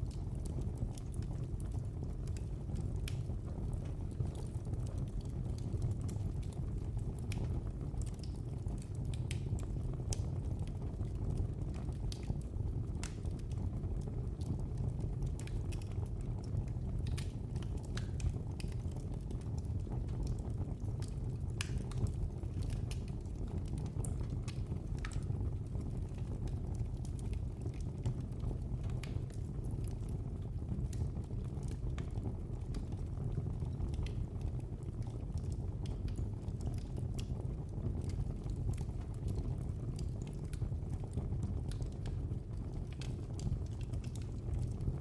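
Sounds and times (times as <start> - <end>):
fire crackling in fireplace: 0.0 - 45.0.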